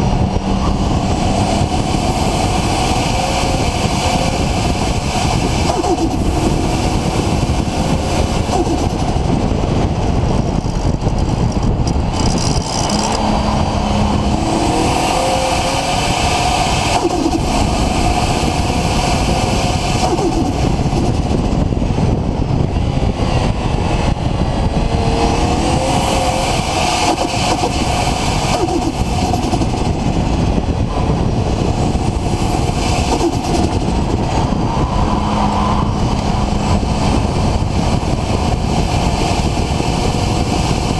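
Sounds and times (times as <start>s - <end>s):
turbocharged engine running: 0.0s - 40.9s
high turbo whistles: 22.5s - 40.9s.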